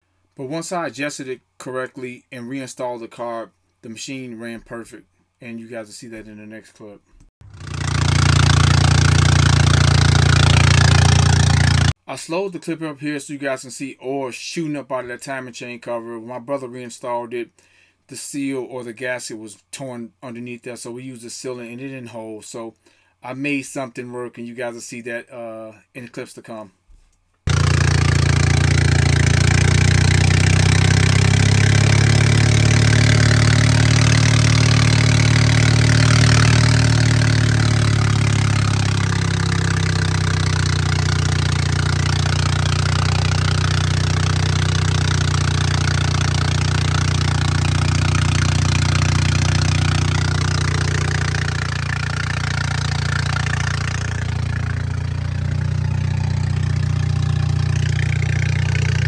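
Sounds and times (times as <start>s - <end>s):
engine idling: 7.4s - 12.0s, 27.5s - 59.0s.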